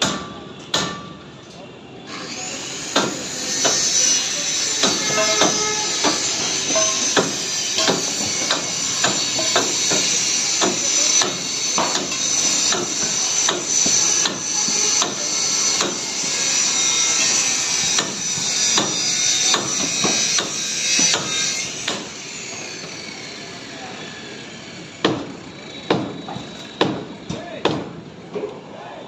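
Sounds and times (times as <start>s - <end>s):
hammer strikes: 0.0s - 1.2s, 2.9s - 4.1s, 4.8s - 22.7s, 25.0s - 25.3s, 25.9s - 28.0s.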